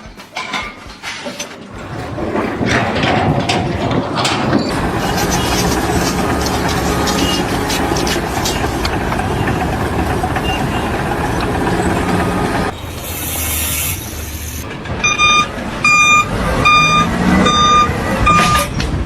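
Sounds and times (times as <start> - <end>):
machinery rumble: 1.6 - 19.0
reversing alarm beeping: 14.8 - 18.8.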